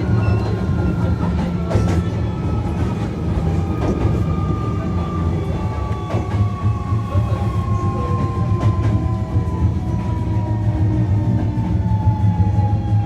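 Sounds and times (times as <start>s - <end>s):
rail joint clicks: 0.0s - 10.4s
wheels rumbling on rail: 0.0s - 13.0s.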